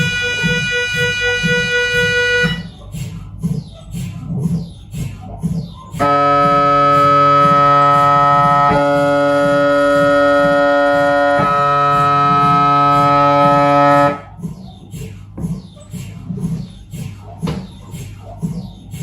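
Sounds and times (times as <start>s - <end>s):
mri scanner loud tone: 0.0s - 2.8s, 6.0s - 14.2s.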